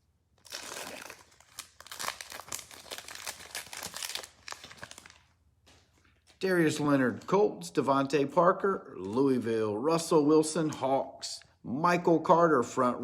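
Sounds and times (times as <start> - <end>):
foil wrapper crinkling: 0.4 - 5.4.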